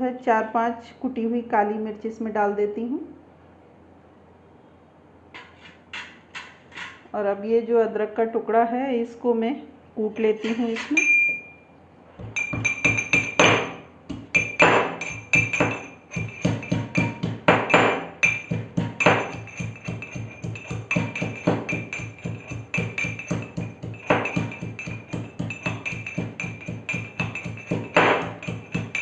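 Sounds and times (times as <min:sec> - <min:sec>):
steady ringing tone: 0:11.0 - 0:29.0
mortar and pestle pounding: 0:12.2 - 0:29.0.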